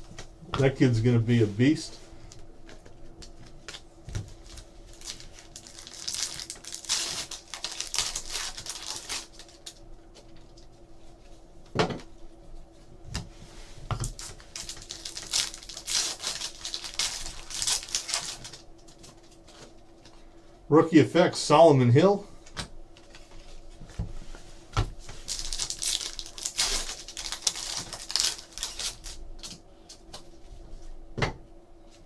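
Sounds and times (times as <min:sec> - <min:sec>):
wrappers crinkling and tearing: 0:00.0 - 0:10.7, 0:14.0 - 0:19.8, 0:25.0 - 0:30.2.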